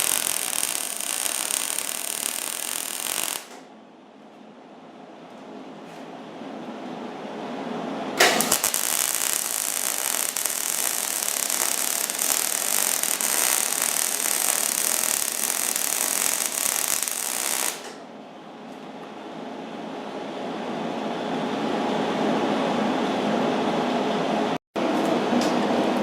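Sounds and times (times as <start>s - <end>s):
welder arc crackling: 0.0s - 3.6s, 8.2s - 18.0s.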